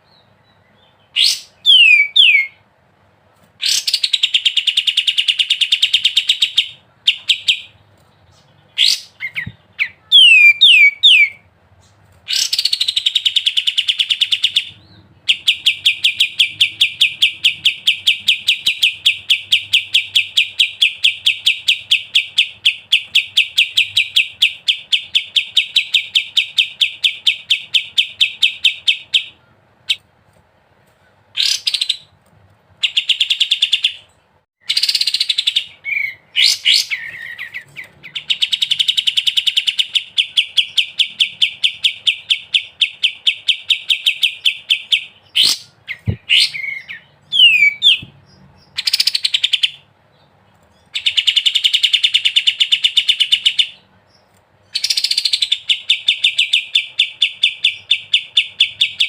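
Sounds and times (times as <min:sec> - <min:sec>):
songbird whistling and trilling: 0:00.1 - 0:02.6, 0:08.7 - 0:11.5, 0:12.3 - 0:30.0, 0:32.8 - 0:49.9, 0:54.6 - 0:59.0.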